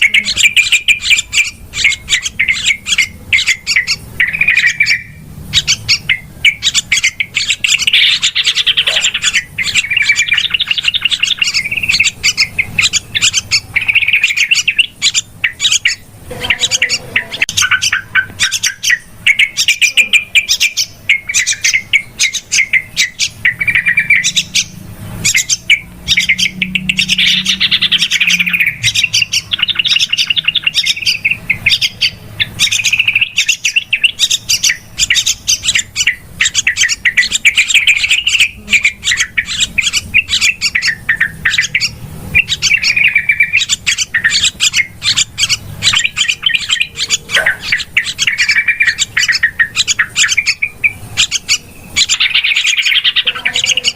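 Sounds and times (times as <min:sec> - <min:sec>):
bulbuls bubbling chattering calls: 0:00.0 - 0:53.9.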